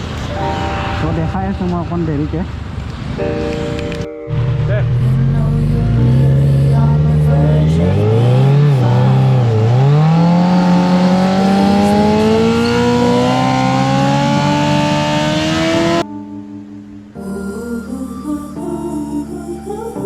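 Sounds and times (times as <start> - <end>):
motorcycle engine revving: 4.3 - 16.0.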